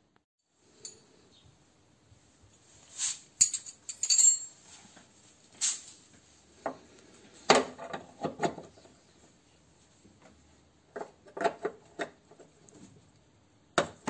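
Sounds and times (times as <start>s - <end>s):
metal hand tools clinking: 3.4s - 4.6s.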